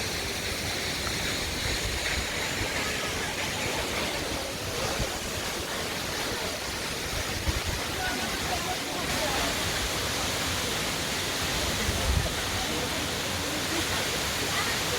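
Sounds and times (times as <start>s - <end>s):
waterfall rushing: 0.0s - 14.9s.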